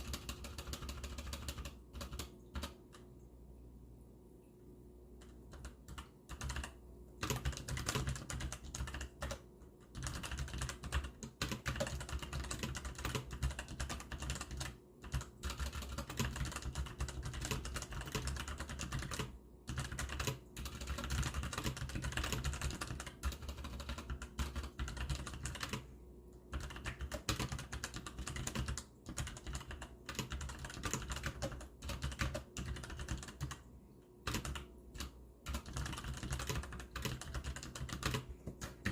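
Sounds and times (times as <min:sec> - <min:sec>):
mechanical keyboard typing: 0:00.0 - 0:03.1, 0:05.2 - 0:25.9, 0:26.5 - 0:33.6, 0:34.2 - 0:38.9.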